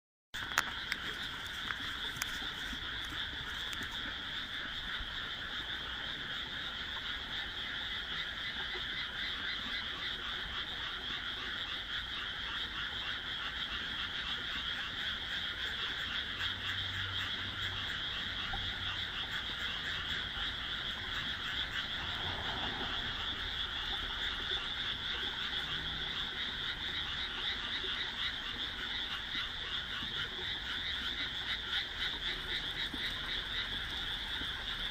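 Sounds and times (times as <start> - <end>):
chorus of frogs croaking: 0.4 - 34.9.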